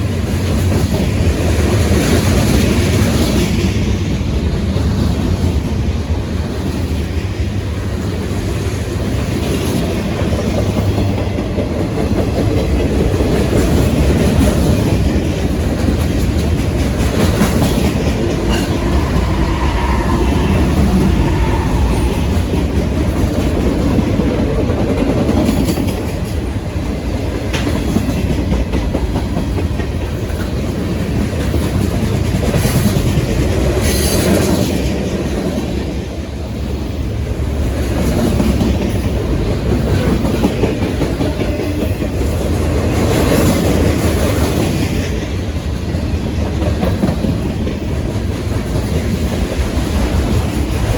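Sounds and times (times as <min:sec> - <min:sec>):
train rumbling on rails: 0:00.0 - 0:50.9
wheels clacking over rail joints: 0:09.0 - 0:20.4.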